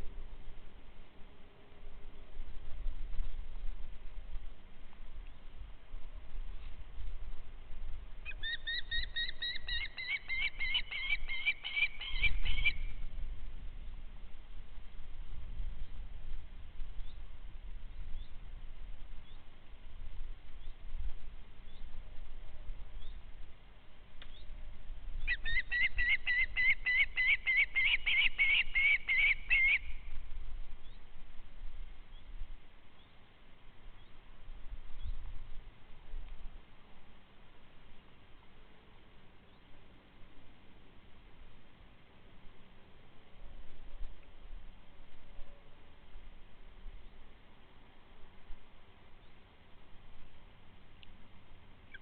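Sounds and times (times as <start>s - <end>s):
faint low rumble: 0.0s - 26.0s, 29.4s - 52.0s
bird calling repeated notes: 8.2s - 13.0s, 25.2s - 30.1s
bird whistling: 8.3s - 13.0s.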